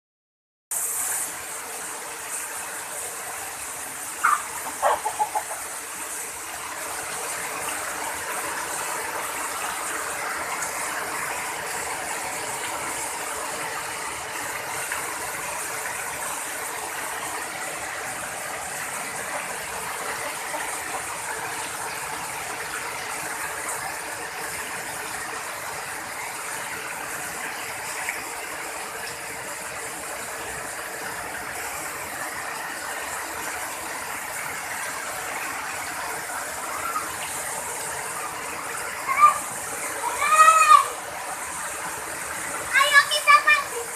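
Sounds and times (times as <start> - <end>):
rain falling: 0.7 - 43.9
chicken calling: 4.2 - 5.8.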